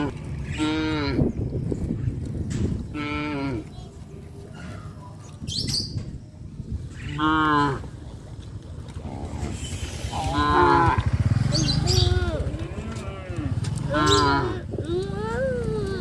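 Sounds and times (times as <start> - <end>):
cattle mooing: 10.1 - 11.1, 12.6 - 14.6.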